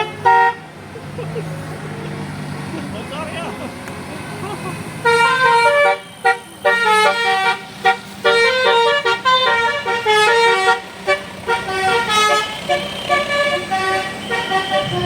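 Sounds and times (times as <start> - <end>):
musical bus horn tune: 0.0 - 0.8, 5.0 - 15.0.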